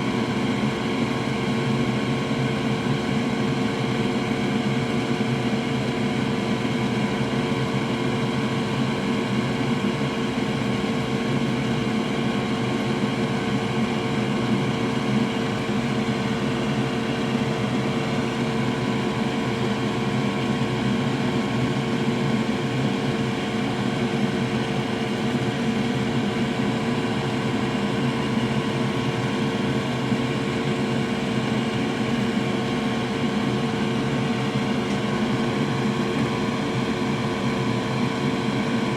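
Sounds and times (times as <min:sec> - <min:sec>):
electric fan motor whirring: 0:12.9 - 0:38.9.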